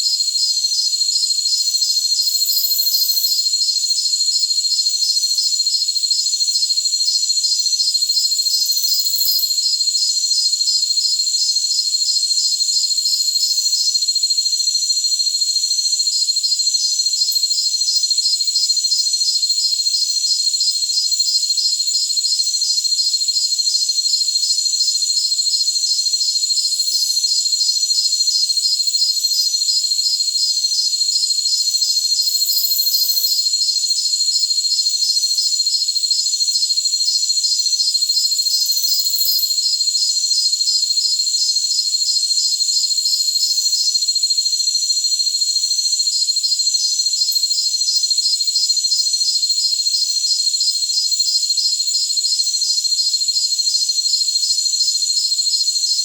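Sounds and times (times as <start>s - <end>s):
crickets trilling: 0.0s - 55.8s
pulsed cricket chirping: 0.0s - 55.9s.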